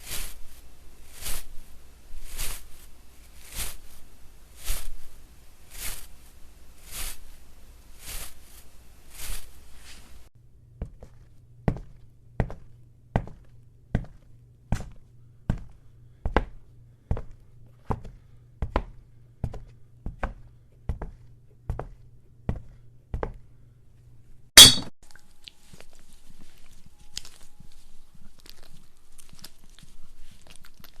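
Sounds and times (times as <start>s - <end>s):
soft noisy strokes: 0.0s - 10.3s
steady low hum: 0.0s - 24.9s.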